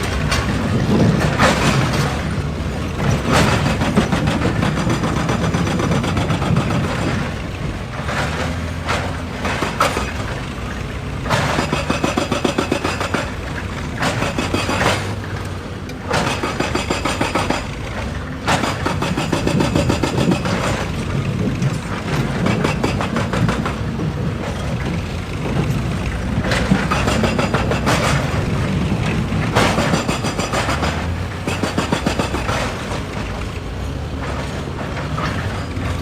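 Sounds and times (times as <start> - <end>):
diesel engine running: 0.0 - 36.0
rapid rattling strikes: 21.8 - 33.5.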